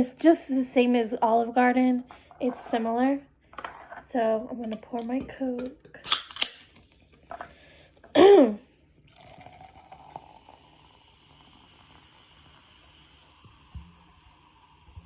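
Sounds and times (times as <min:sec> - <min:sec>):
soda fizzing as poured: 0:09.1 - 0:15.0.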